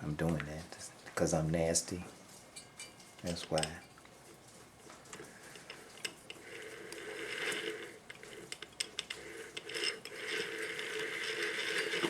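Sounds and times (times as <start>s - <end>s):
whirring ratcheting gears: 6.3s - 12.0s.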